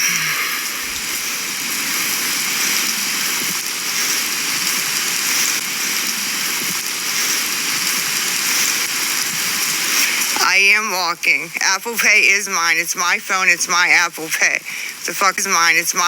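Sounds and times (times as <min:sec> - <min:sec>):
rain falling: 0:00.0 - 0:16.0.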